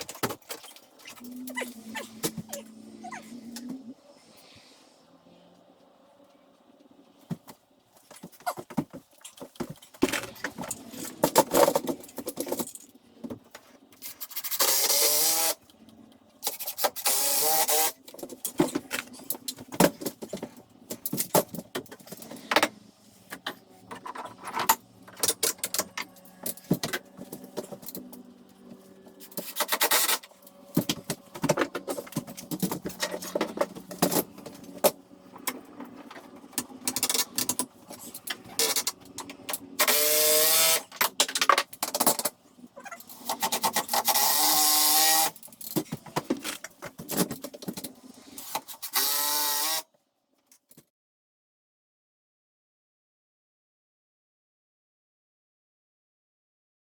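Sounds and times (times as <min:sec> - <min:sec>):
power tool bursts: 0:14.4 - 0:15.6, 0:39.8 - 0:40.9.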